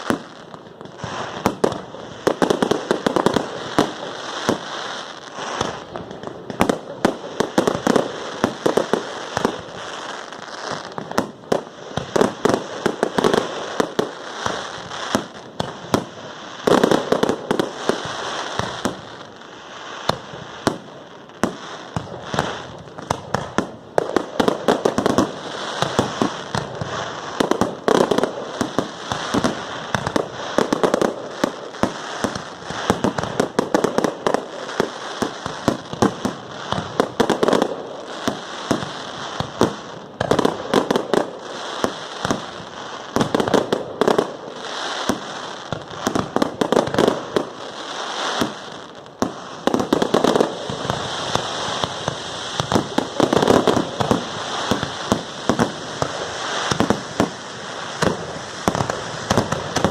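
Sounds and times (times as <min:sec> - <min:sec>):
fireworks bangs and crackling: 0:00.0 - 0:59.9.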